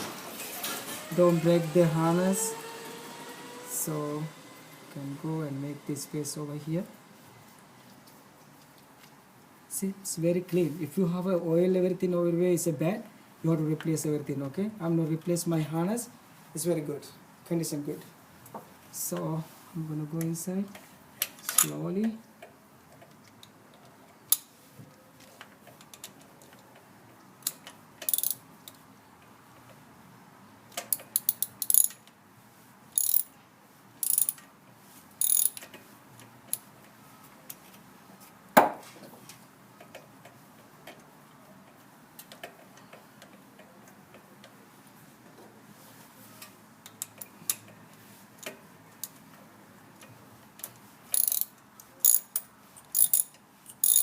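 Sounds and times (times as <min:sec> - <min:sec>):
ratchet wrench clicking: 0:27.4 - 0:28.4, 0:30.9 - 0:32.1, 0:33.0 - 0:33.4, 0:34.0 - 0:34.4, 0:35.2 - 0:35.7, 0:51.1 - 0:54.0.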